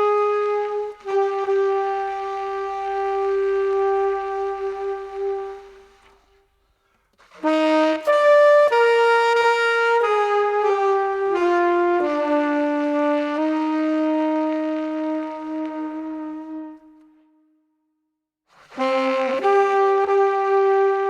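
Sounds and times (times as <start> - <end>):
solo saxophone melody: 0.0 - 6.5, 7.3 - 17.6, 18.6 - 21.0.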